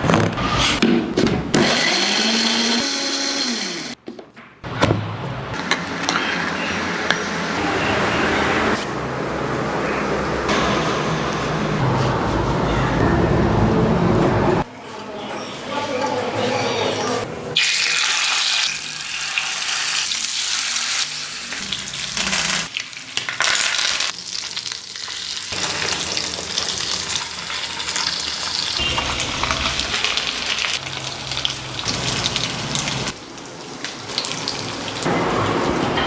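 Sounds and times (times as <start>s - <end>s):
fish sizzling in hot oil: 17.6s - 35.1s.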